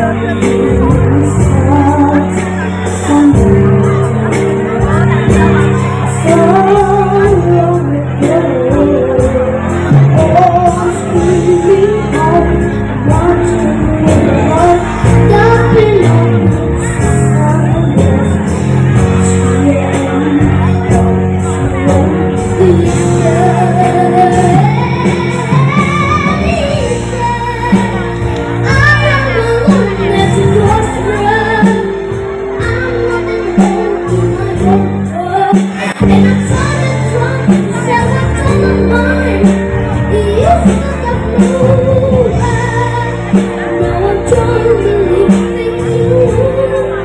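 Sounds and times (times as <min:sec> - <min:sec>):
child singing: 0:00.0 - 0:18.5, 0:21.6 - 0:47.0
backing music: 0:00.0 - 0:47.0.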